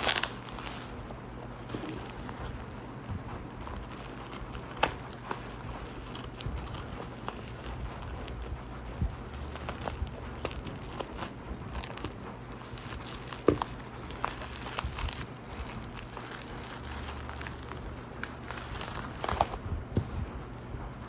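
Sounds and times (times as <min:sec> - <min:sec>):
packaging crinkling: 0:00.0 - 0:21.0.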